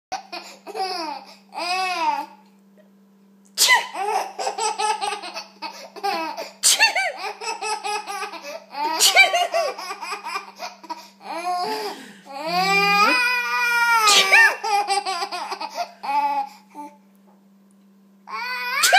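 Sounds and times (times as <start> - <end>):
baby laughing: 0.2 - 2.3, 3.7 - 16.5.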